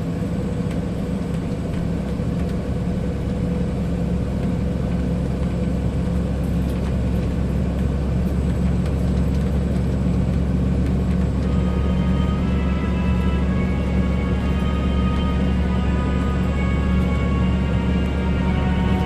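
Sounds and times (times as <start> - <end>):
diesel truck engine droning: 0.0 - 19.0
faint music: 5.3 - 19.0.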